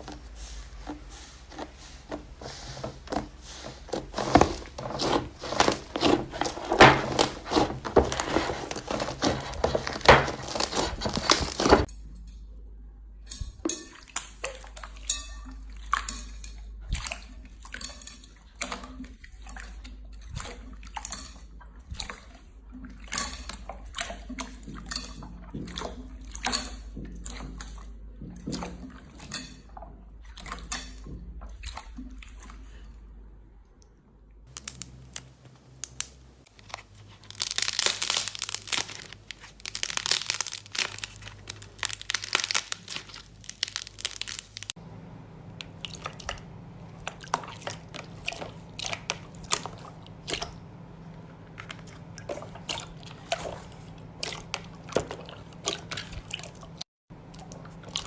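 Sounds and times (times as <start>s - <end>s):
slime crackling and popping: 34.5s - 44.8s.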